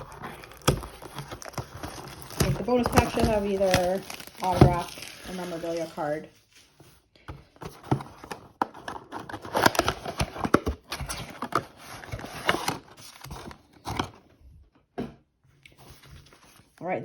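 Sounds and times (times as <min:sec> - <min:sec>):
foil wrappers crinkling: 0:00.0 - 0:06.7.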